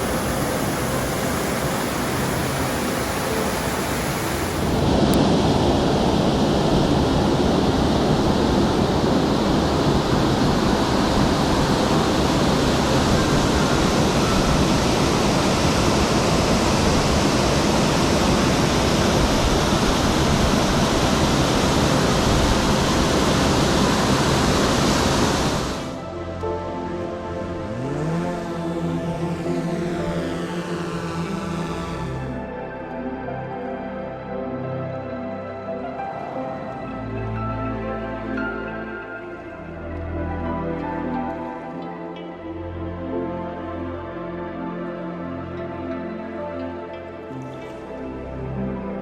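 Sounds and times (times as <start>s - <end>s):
waterfall rushing: 0.0s - 26.0s, 27.2s - 32.4s.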